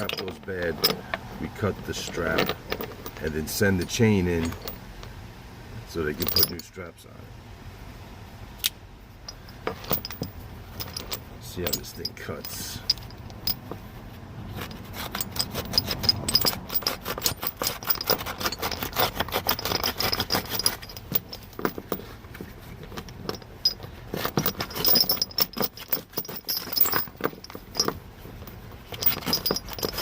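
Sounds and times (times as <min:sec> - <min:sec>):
serrated knife sawing through strap: 0:14.8 - 0:20.9.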